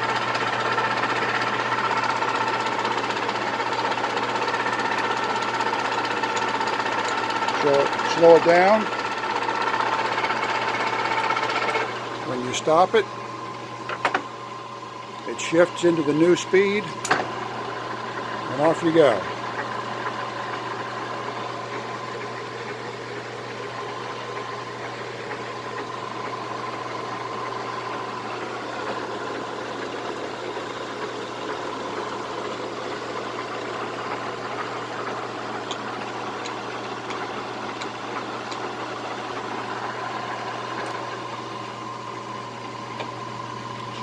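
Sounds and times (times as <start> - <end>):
lathe running with hum and whine: 0.0 - 44.0.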